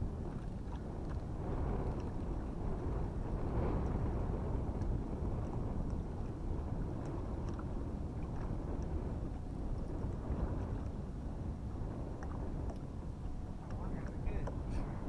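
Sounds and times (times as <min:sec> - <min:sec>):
water around boat: 0:00.0 - 0:15.0
wind buffeting microphone: 0:00.0 - 0:15.0
faint raindrop ticks: 0:01.1 - 0:04.2, 0:04.8 - 0:06.0, 0:08.4 - 0:10.8, 0:12.2 - 0:12.9.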